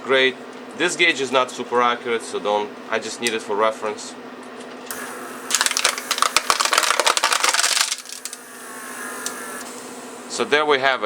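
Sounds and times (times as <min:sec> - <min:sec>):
pump whine: 0:04.9 - 0:10.6
vacuum pump buzzing rattle: 0:04.9 - 0:10.6.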